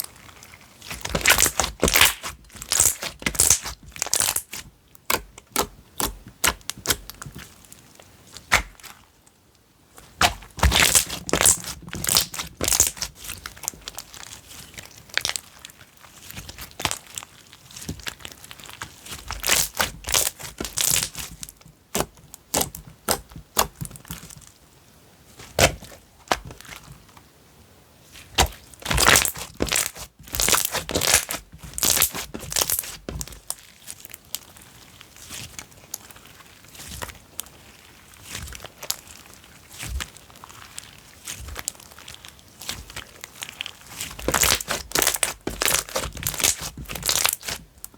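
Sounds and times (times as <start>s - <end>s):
slime squished by hand: 0.0s - 9.0s, 10.0s - 24.4s, 28.1s - 47.9s.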